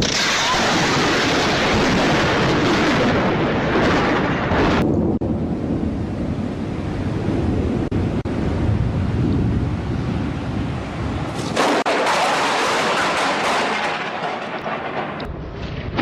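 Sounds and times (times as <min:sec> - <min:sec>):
strong wind buffeting microphone: 0:00.8 - 0:11.9.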